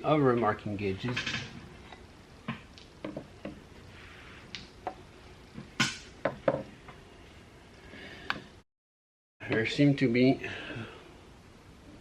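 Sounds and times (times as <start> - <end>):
wooden tools knocking: 2.5 - 3.6, 5.8 - 6.7.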